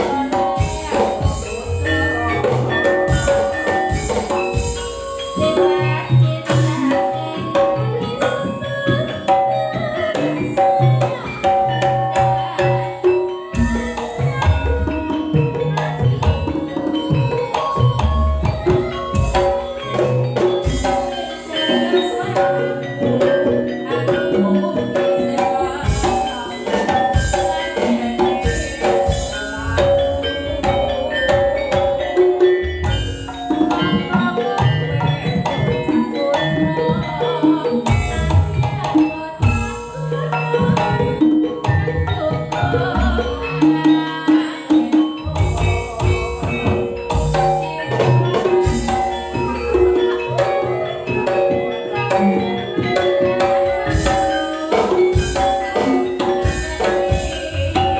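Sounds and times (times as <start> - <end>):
gamelan metallophones ringing: 0.0 - 57.9
hand drumming: 0.0 - 57.9.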